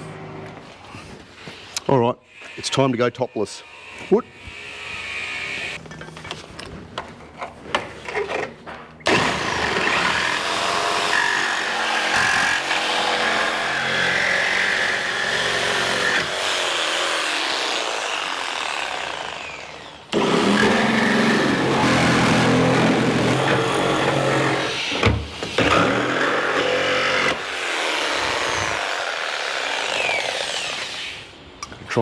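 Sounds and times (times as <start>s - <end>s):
chainsaw cutting through metal: 9.1s - 31.3s.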